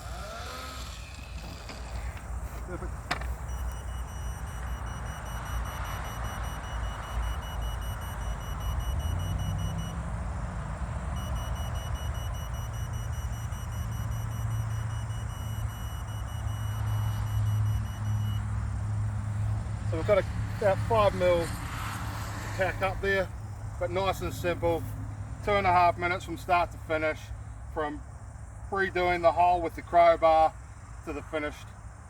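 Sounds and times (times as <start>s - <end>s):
engine running: 0.0s - 25.9s
high-pitched electronic beeping: 3.4s - 10.1s, 11.2s - 18.5s.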